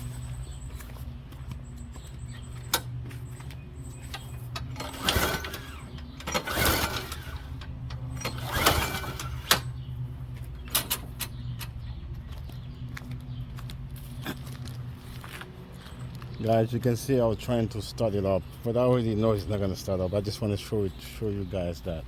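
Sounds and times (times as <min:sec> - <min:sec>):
engine cranking without starting: 0:03.9 - 0:09.9
recoil starter cord pulled: 0:04.5 - 0:09.7.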